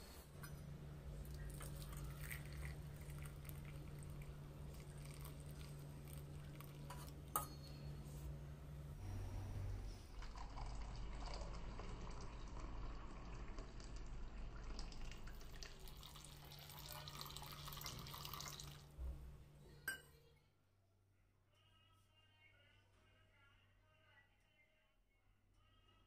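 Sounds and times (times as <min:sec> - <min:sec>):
liquid pouring and splashing: 0:01.3 - 0:07.2, 0:10.2 - 0:18.9
sharp clink: 0:07.4 - 0:07.9.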